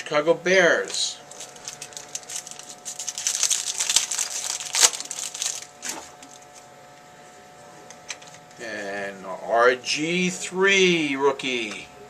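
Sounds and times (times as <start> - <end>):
wrapper crinkling: 1.3 - 6.6.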